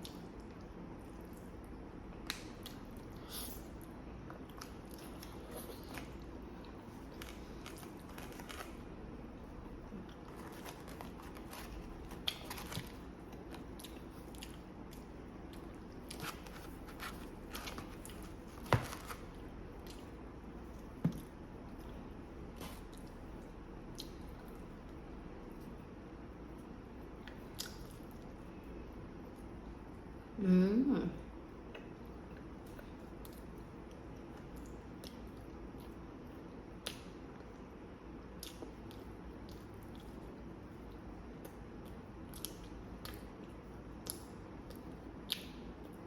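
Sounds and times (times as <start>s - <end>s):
person chewing food: 9.8s - 24.7s.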